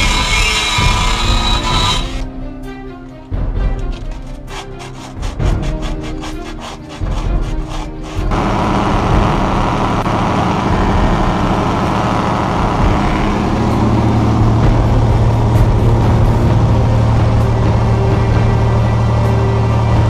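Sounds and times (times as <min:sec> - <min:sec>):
pickup engine running: 0:07.0 - 0:20.0.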